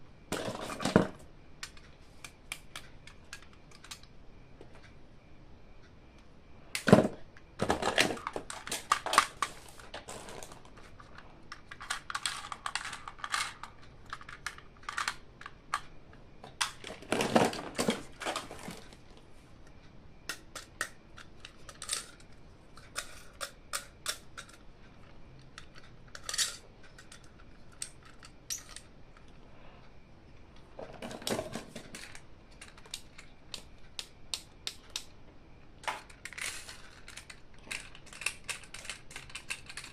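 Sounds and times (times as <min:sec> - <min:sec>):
plastic toy parts clicking: 0:01.6 - 0:04.1, 0:11.6 - 0:15.9, 0:20.3 - 0:24.6, 0:25.5 - 0:29.3, 0:31.0 - 0:35.1, 0:35.8 - 0:39.9.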